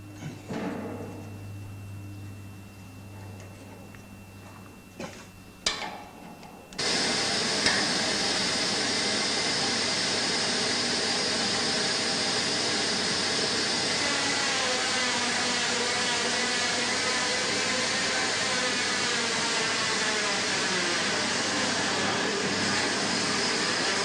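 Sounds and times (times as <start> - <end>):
bandsaw running: 6.8 - 24.0.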